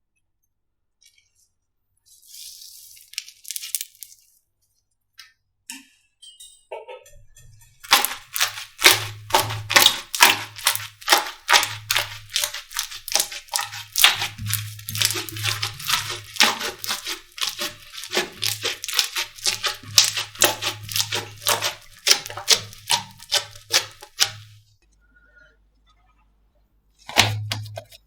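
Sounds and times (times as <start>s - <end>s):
slime squishing and crackling: 3.0s - 4.2s, 7.8s - 24.6s.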